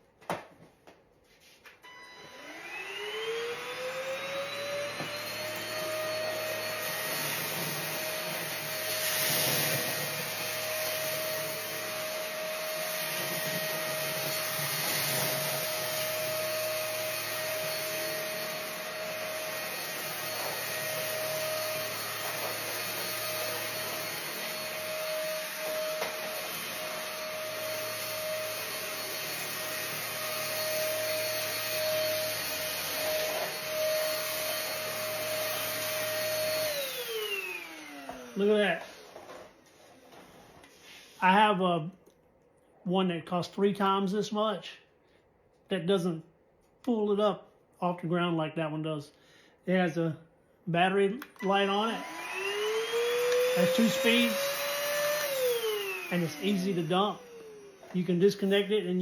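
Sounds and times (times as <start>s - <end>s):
vacuum cleaner motor whine: 1.8s - 40.8s, 51.2s - 59.0s.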